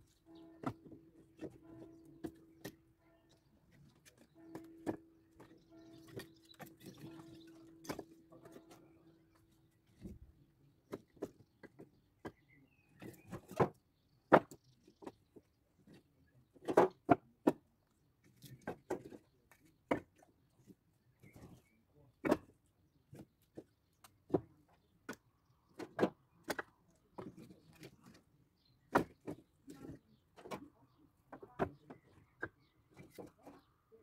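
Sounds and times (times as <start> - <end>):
firewood logs knocking: 0.5 - 2.8, 3.8 - 8.9, 13.0 - 15.4, 16.5 - 17.7, 19.9 - 20.2, 22.2 - 27.9, 28.8 - 30.7.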